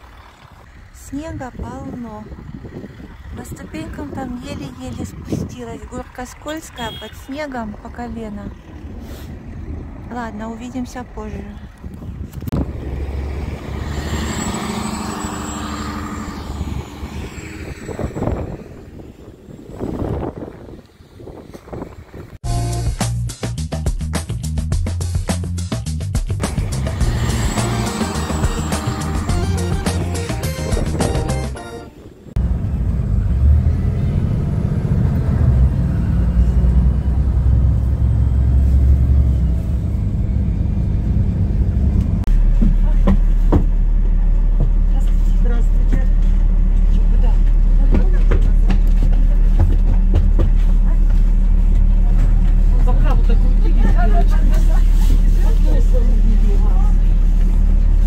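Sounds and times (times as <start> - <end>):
vehicle engine running: 0.0 - 22.4, 24.8 - 58.0
bumps and rustling: 42.3 - 55.9.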